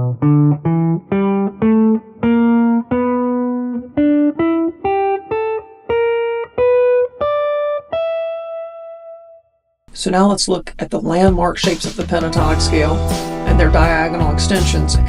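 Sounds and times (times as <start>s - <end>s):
guitar scale run: 11.4s - 15.0s.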